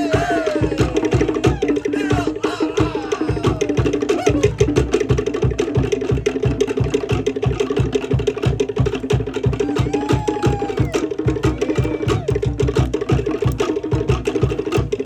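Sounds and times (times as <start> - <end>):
held vocal call: 0.0 - 5.0, 9.4 - 12.8
bass drum beat: 0.0 - 15.0.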